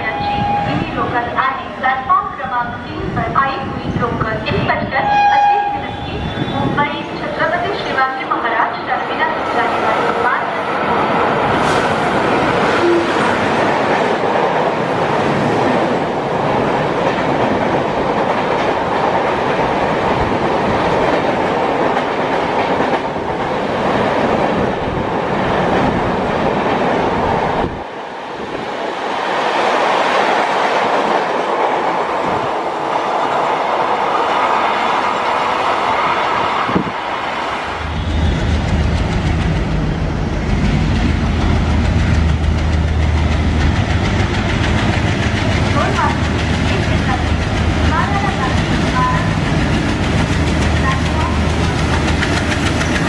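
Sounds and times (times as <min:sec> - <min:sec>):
low train rumble: 0:00.0 - 0:53.0
train wheels clattering over rail joints: 0:40.5 - 0:53.0.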